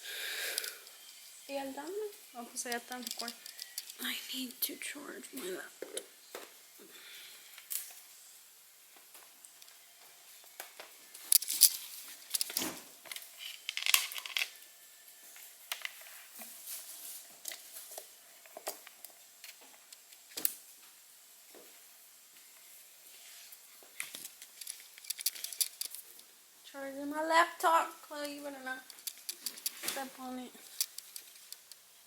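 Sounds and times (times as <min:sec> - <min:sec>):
laptop handling clicks and rustling: 0:11.2 - 0:14.5, 0:28.9 - 0:30.0.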